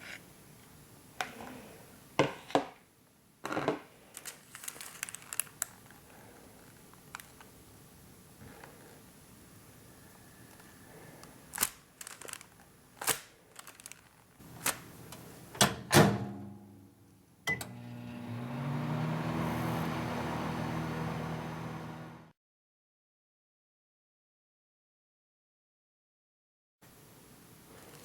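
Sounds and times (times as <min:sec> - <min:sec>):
microwave beep: 0:17.5 - 0:18.4
microwave oven humming: 0:17.5 - 0:22.3.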